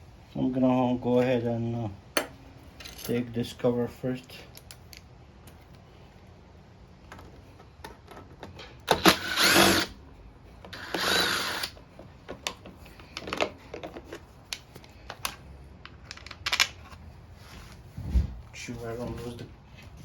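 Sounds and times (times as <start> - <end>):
power drill-driver bursts: 8.9 - 10.0, 10.7 - 11.8
handling clicks and knocks: 11.8 - 17.0.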